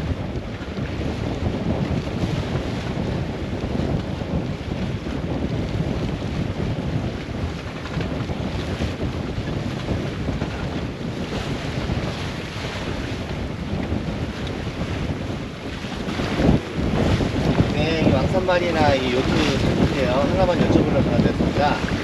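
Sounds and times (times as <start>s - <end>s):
wind buffeting microphone: 0.0s - 22.0s
wash of waves: 8.6s - 22.0s.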